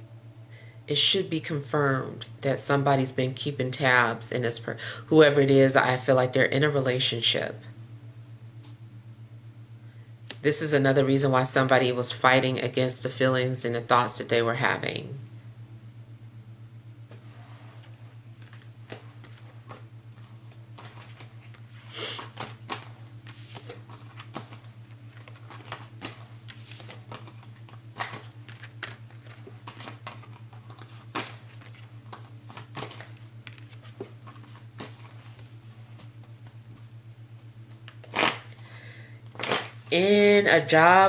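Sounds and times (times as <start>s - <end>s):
steady low hum: 0.0s - 41.0s
cards being shuffled: 17.7s - 36.9s, 37.6s - 38.7s, 39.3s - 39.9s.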